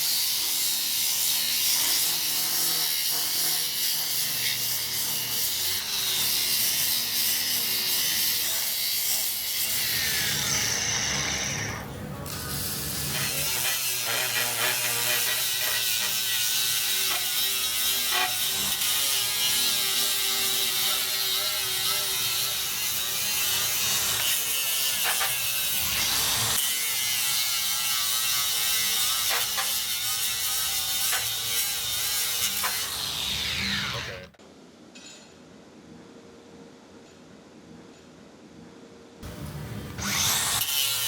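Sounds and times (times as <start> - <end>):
angle grinder grinding metal: 0.0 - 34.3, 39.2 - 41.0.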